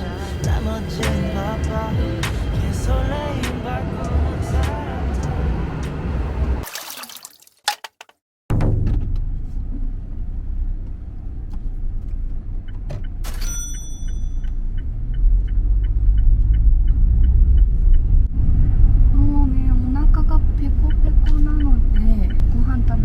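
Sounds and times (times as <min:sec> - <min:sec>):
car road and engine rumble: 0:00.0 - 0:06.7, 0:08.5 - 0:23.0
short chime: 0:13.4 - 0:14.5.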